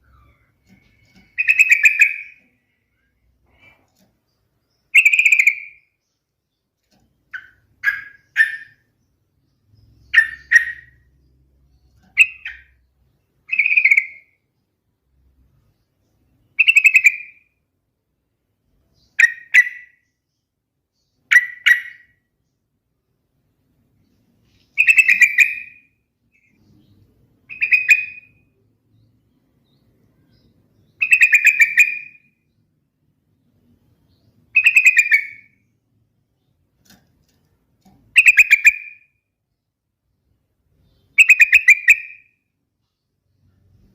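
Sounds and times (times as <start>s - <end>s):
bird singing short phrases: 24.4s - 32.7s, 33.9s - 35.8s.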